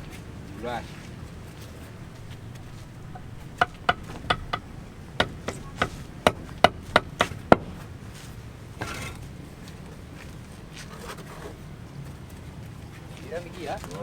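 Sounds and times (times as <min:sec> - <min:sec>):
hammer blows: 0:02.0 - 0:10.3.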